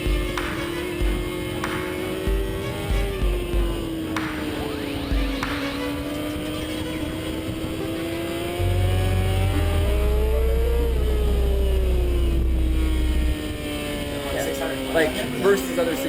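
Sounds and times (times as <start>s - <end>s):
motorcycle engine running: 0.0s - 16.0s
deep loud low hum: 7.5s - 16.0s.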